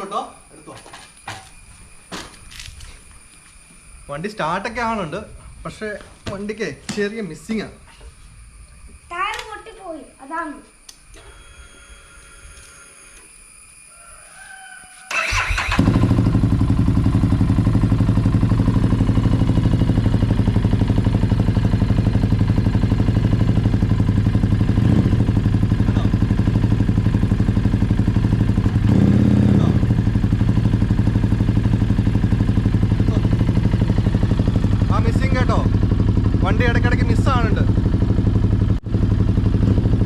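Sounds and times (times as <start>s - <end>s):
motorcycle starter cranking: 15.1s - 16.4s
motorcycle engine idling: 15.1s - 40.0s.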